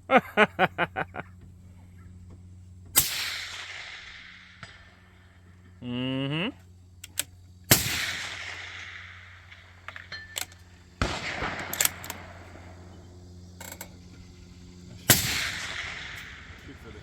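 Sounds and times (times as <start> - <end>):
rifle shot: 2.9 - 5.2, 7.7 - 10.2, 11.0 - 12.8, 15.1 - 16.8
small sharp cracks: 7.0 - 12.5.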